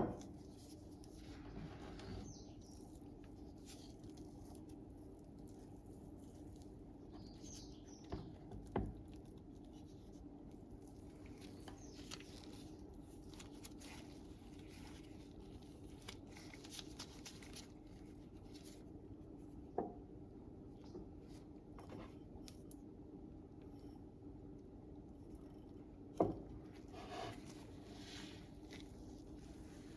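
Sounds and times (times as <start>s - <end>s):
steady low hum: 0.0s - 29.9s
soft scrapes and rustles: 0.1s - 8.0s, 9.4s - 19.6s, 26.6s - 29.9s.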